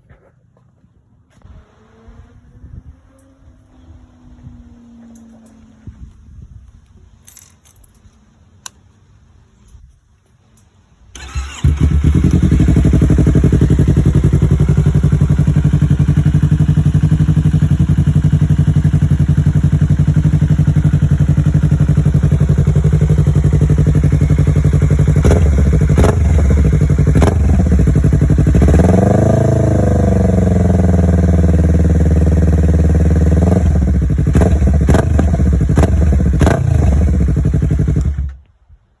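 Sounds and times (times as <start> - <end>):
motorcycle engine idling and revving: 1.4 - 7.9, 11.2 - 38.4.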